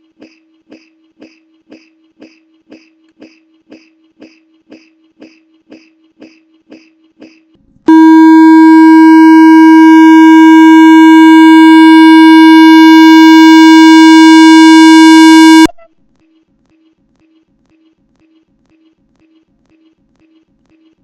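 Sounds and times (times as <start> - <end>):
buzzy electronic tone: 7.9 - 15.7.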